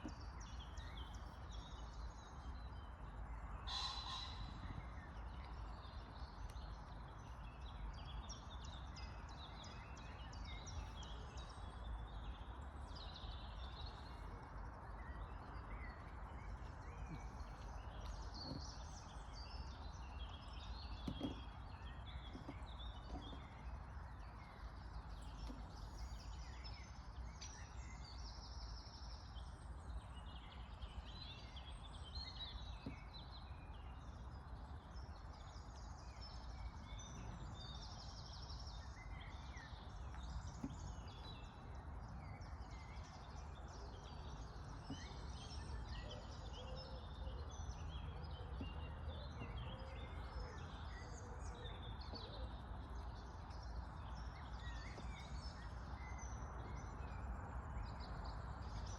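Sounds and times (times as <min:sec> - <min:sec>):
birds chirping and calling: 0:03.7 - 0:05.8.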